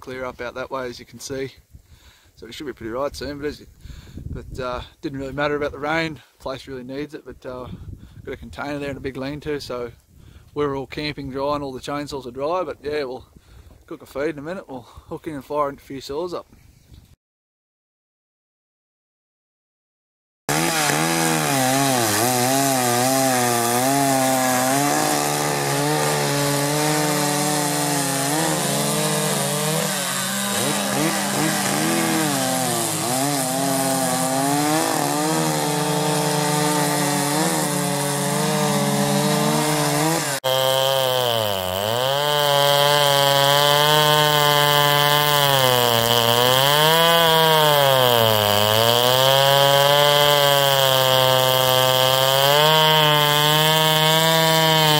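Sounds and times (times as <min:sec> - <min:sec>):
chainsaws cutting wood: 0:20.5 - 0:54.9.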